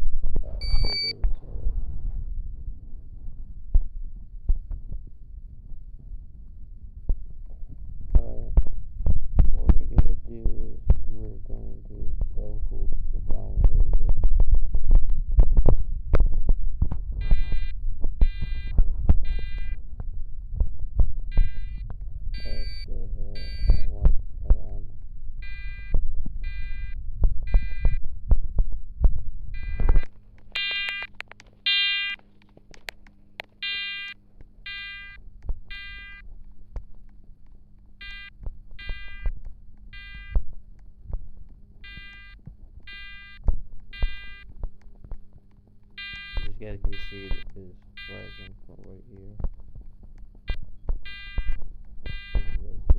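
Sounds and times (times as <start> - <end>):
faint steady hum: 0.0 - 52.9
fire alarm beeps: 0.6 - 1.2, 17.2 - 19.8, 21.3 - 21.8, 22.4 - 23.9, 25.4 - 28.0, 29.6 - 31.1, 31.7 - 32.2, 33.6 - 36.2, 38.0 - 39.3, 39.9 - 40.4, 41.8 - 44.5, 46.0 - 48.6, 50.5 - 52.6
irregular low knocks and clicks: 27.2 - 52.9.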